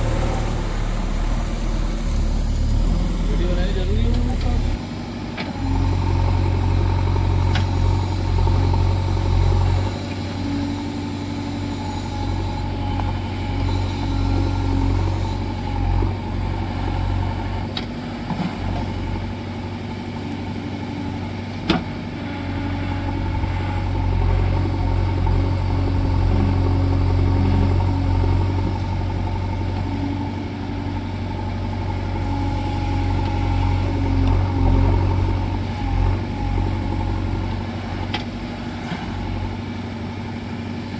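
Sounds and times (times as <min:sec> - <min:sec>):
diesel engine running: 0:00.0 - 0:40.9.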